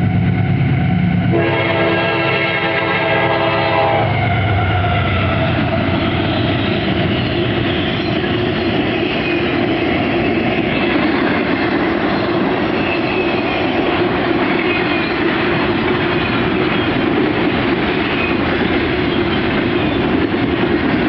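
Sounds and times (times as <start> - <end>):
train wheels rumbling on rails: 0.0 - 21.0
locomotive horn: 1.3 - 4.2
high wheel squeal: 12.2 - 13.7.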